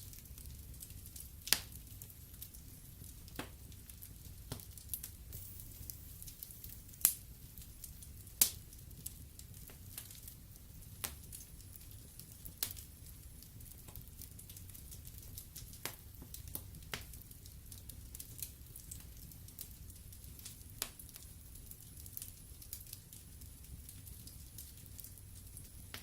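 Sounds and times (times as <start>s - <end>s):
wood fire rumbling and hissing: 0.0s - 26.0s
logs crackling and popping: 0.1s - 26.0s.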